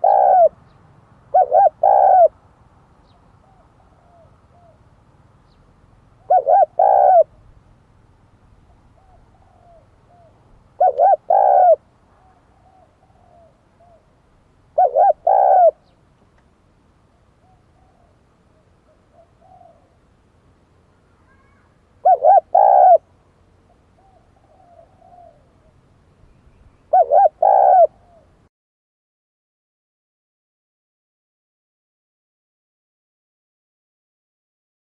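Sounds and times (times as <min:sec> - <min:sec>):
dove cooing: 0:00.0 - 0:00.6, 0:01.3 - 0:02.4, 0:03.4 - 0:04.9, 0:06.2 - 0:07.4, 0:08.7 - 0:14.1, 0:14.7 - 0:16.0, 0:17.4 - 0:20.0, 0:21.2 - 0:23.1, 0:23.7 - 0:25.9, 0:26.9 - 0:28.4.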